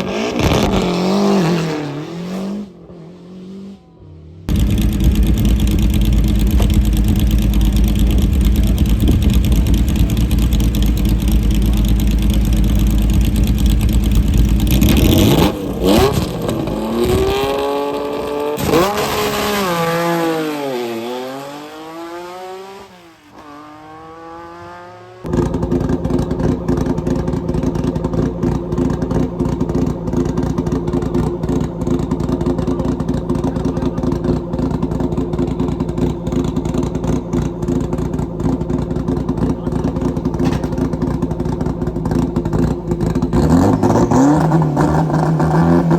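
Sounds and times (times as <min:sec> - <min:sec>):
car engine crackling: 0:00.0 - 0:45.9
rally car engine accelerating: 0:00.0 - 0:45.9.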